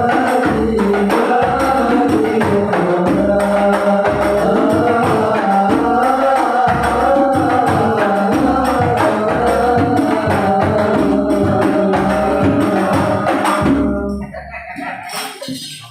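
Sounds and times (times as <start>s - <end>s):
frame drums beating: 0.0s - 15.7s
devotional singing: 0.0s - 15.8s.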